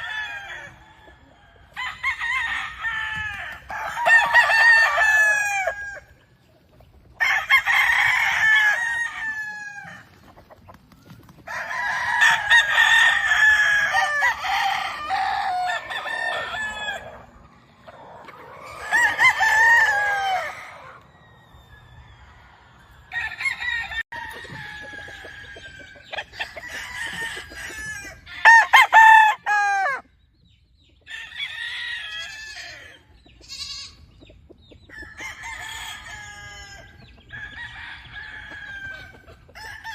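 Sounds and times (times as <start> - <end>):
roosters crowing: 0.0 - 30.2, 31.0 - 34.2, 34.9 - 39.9.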